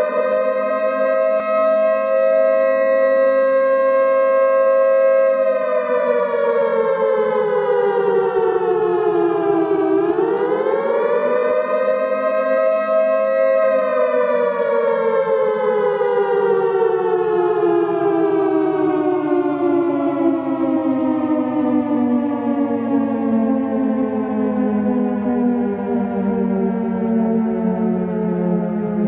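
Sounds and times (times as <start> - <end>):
warning siren wailing: 0.0 - 29.0.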